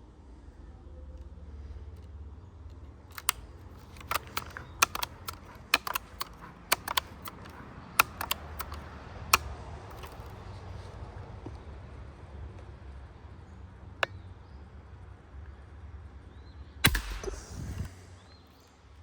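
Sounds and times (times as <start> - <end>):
air rifle mechanical clicks: 3.1 - 10.4, 16.9 - 17.9.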